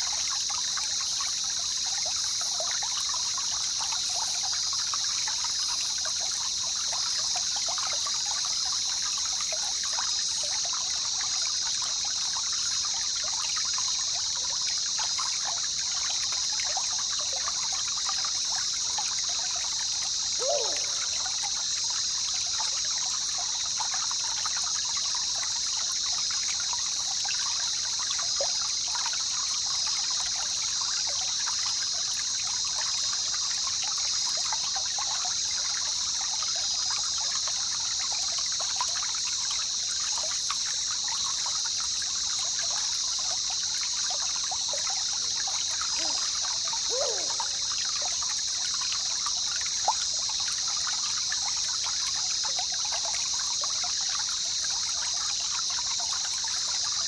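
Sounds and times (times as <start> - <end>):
river trickling and bubbling: 0.0 - 57.0
high-pitched hiss: 45.0 - 47.8.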